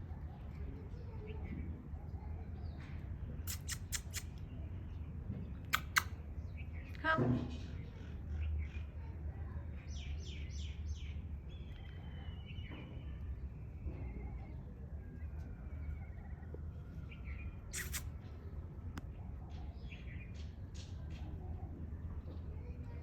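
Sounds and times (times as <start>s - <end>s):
small birds chirping: 0.0s - 23.0s
thin whistled bird calls: 3.4s - 4.7s, 17.3s - 18.4s.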